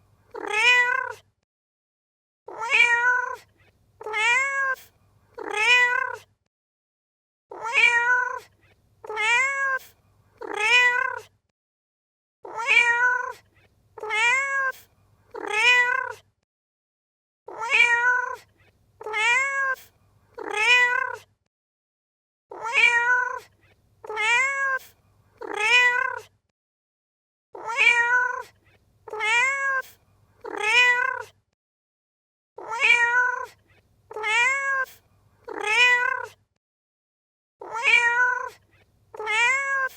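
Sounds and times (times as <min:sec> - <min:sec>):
cat meowing: 0:00.3 - 0:01.2, 0:02.5 - 0:06.3, 0:07.5 - 0:11.3, 0:12.4 - 0:13.4, 0:14.0 - 0:16.2, 0:17.5 - 0:21.3, 0:22.5 - 0:26.3, 0:27.6 - 0:31.4, 0:32.6 - 0:36.4, 0:37.6 - 0:39.9.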